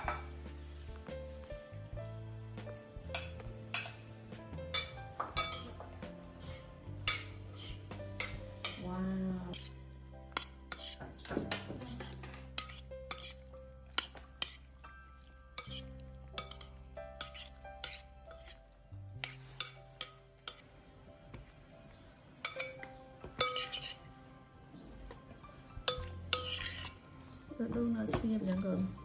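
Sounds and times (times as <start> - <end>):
background music with held notes: 0.0 - 29.0
utensils clinking against dishes: 3.1 - 4.1, 4.7 - 8.9, 10.3 - 18.6, 22.4 - 24.1, 25.8 - 29.0.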